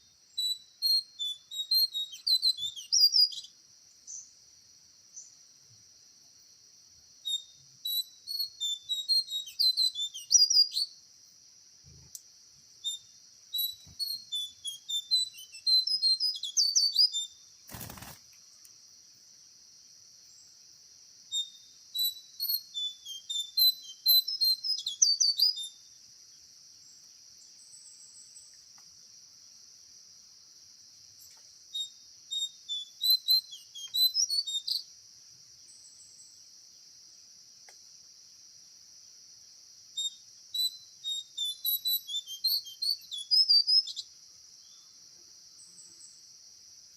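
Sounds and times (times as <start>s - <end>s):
bird chirping: 0.0s - 4.4s, 7.2s - 11.0s, 12.8s - 18.7s, 21.3s - 28.7s, 31.2s - 34.9s, 40.0s - 45.0s.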